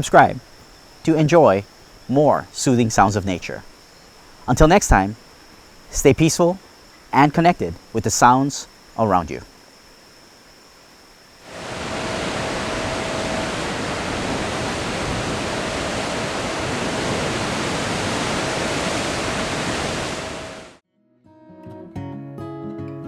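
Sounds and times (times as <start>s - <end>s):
waterfall rushing: 11.4s - 20.8s.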